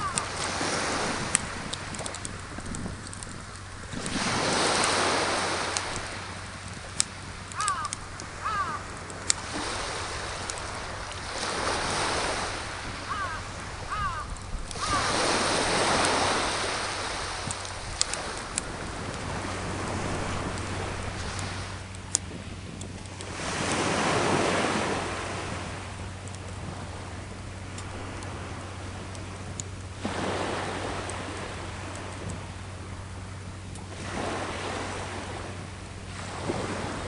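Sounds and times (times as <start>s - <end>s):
sea waves washing ashore: 0.0s - 37.0s
wood fire crackling: 1.2s - 4.2s, 5.7s - 11.4s.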